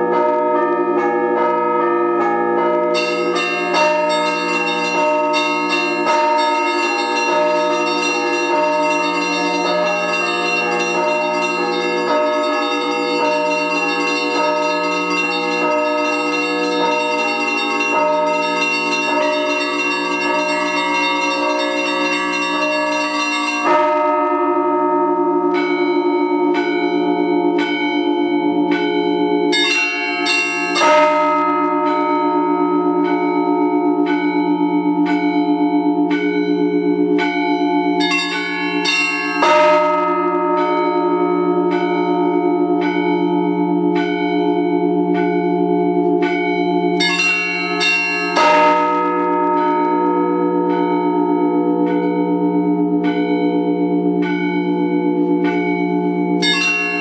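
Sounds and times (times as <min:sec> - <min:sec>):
large bells ringing: 0:00.0 - 0:57.0
small high bells striking: 0:37.2 - 0:40.2, 0:45.2 - 0:50.0, 0:55.2 - 0:57.0.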